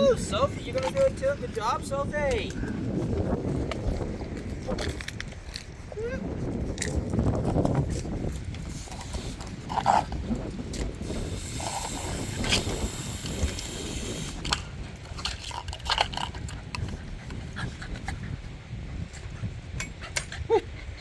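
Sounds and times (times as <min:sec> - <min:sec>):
puppies playing and breathing: 0:00.1 - 0:21.0
crackling clicks and rustling: 0:03.5 - 0:05.9, 0:06.5 - 0:17.1.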